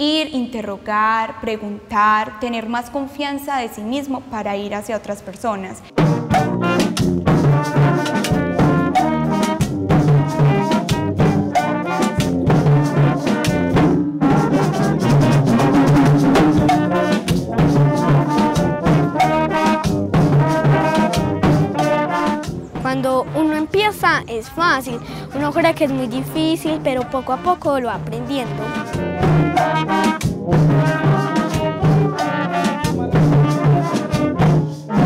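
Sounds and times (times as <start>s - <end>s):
brass band playing: 5.9s - 35.0s.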